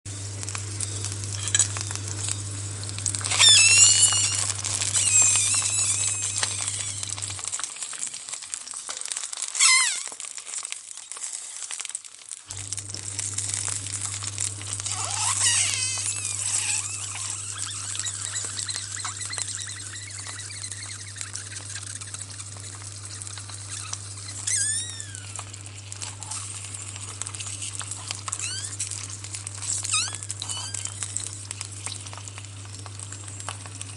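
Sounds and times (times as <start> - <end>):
sausages sizzling in a pan: 0.1 - 33.9
high squealing whistles: 3.2 - 7.5, 9.6 - 10.2, 14.8 - 25.6, 28.3 - 28.9, 29.6 - 32.0.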